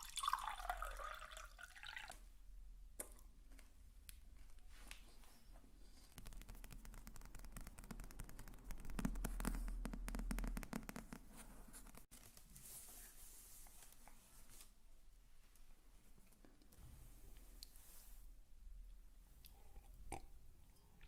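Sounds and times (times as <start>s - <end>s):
soft hissy scratching: 4.4s - 18.4s.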